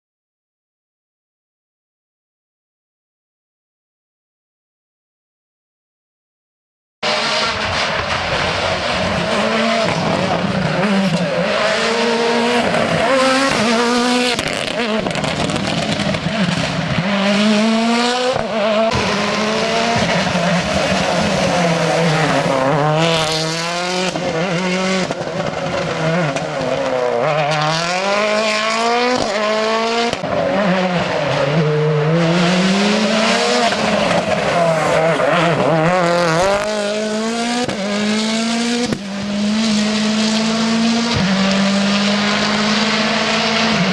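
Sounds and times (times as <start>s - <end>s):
rally car engine at full throttle: 7.0s - 43.9s.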